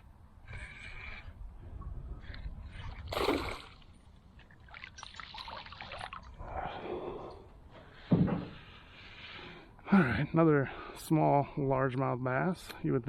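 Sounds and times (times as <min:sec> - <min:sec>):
water splashing and dripping: 0:02.2 - 0:06.6.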